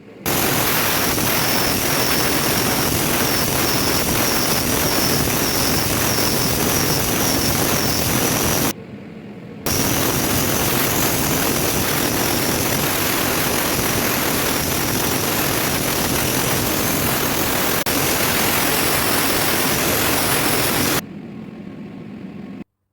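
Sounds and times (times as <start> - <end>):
welding arc crackling: 0.3 - 8.8, 9.7 - 21.0.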